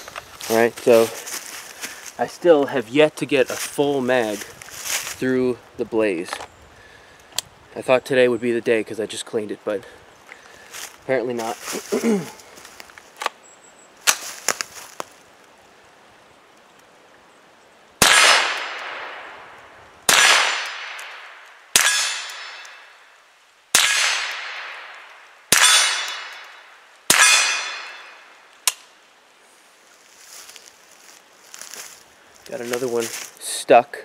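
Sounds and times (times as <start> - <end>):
rifle shots: 18.0 - 19.4, 20.1 - 22.8, 23.7 - 28.2.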